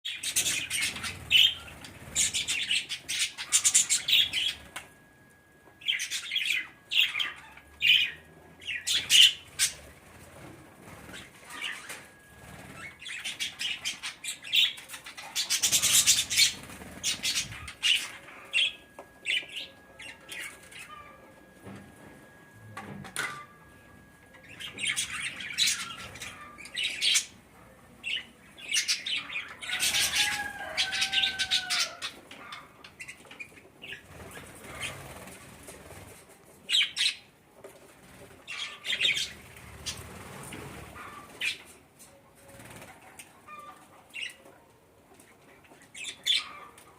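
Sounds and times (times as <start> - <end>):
budgerigars chirping: 0.1 - 4.7, 12.8 - 21.1.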